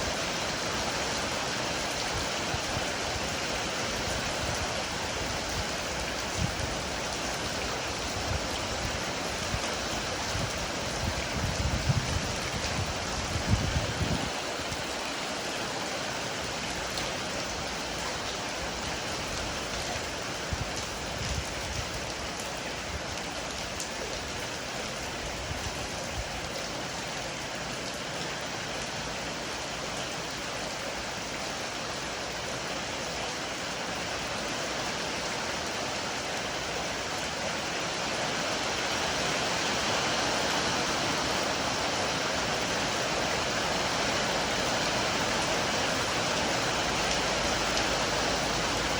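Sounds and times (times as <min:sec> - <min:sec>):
heavy rain pouring: 0:00.0 - 0:48.9.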